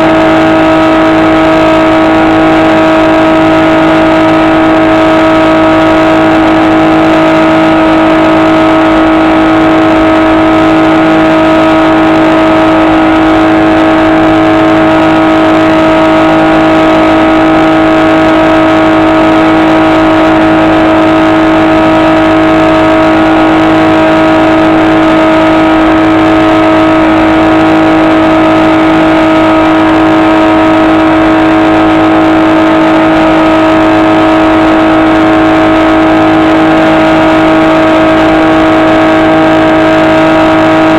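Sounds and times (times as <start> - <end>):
electric motor and propeller whine: 0.0 - 40.9.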